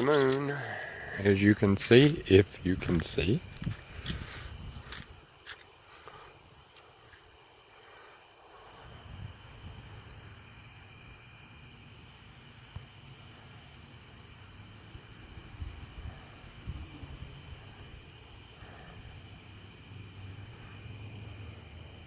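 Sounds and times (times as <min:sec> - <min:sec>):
night insects chorus: 0:00.0 - 0:22.0
wind rumble on microphone: 0:02.1 - 0:05.3, 0:08.8 - 0:10.3, 0:15.0 - 0:18.2.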